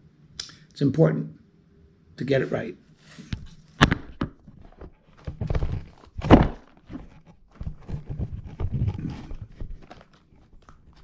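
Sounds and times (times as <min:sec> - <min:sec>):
objects knocking and clunking: 0:03.3 - 0:11.0
loud thunk: 0:06.2 - 0:06.7.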